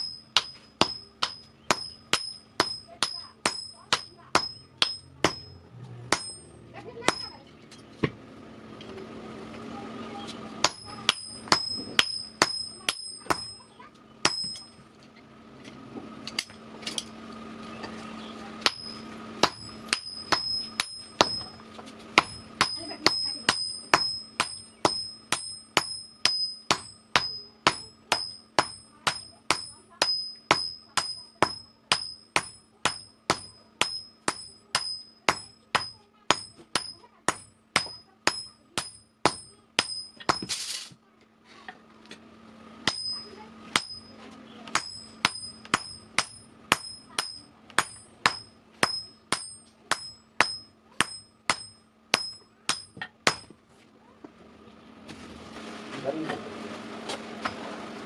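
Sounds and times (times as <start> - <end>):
hammer striking metal on anvil: 0.0 - 7.4, 10.6 - 14.8, 18.6 - 21.6, 22.2 - 40.6, 42.8 - 53.6.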